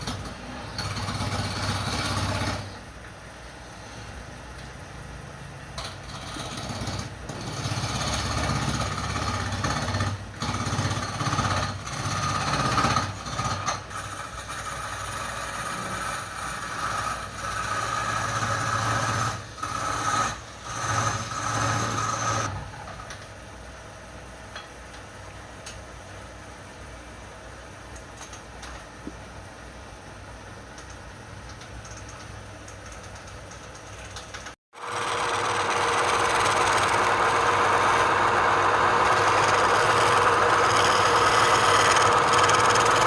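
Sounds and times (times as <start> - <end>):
tool cutting spinning wood: 0.0 - 2.8, 5.8 - 22.7, 34.7 - 43.0
lathe motor hum: 12.7 - 22.5, 34.8 - 43.0.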